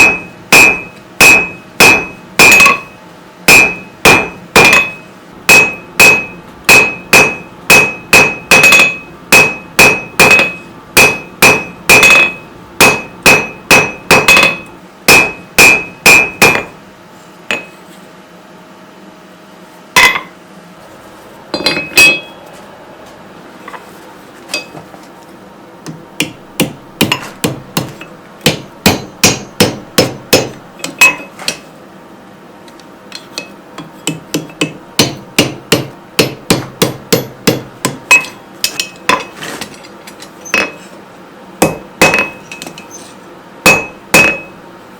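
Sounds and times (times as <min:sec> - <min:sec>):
hammer striking steel on anvil: 0:00.0 - 0:16.8, 0:17.5 - 0:17.8, 0:20.0 - 0:20.4, 0:21.6 - 0:22.4, 0:24.5 - 0:24.8, 0:25.9 - 0:31.7, 0:33.2 - 0:39.3, 0:40.5 - 0:40.8, 0:41.6 - 0:42.9, 0:43.6 - 0:44.6.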